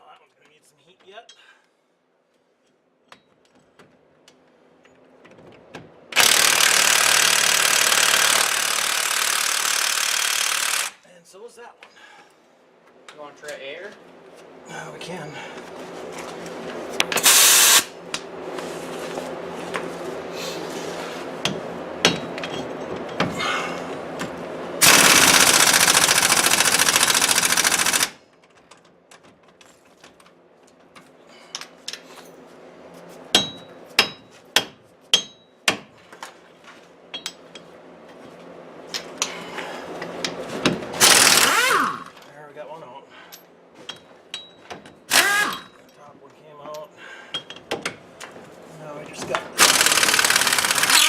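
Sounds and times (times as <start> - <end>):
pneumatic impact wrench hammering: 6.1 - 11.0, 17.1 - 18.0, 24.8 - 28.2, 40.6 - 42.2, 44.4 - 45.8, 49.5 - 51.0
sharp metallic clicks: 49.6 - 51.0.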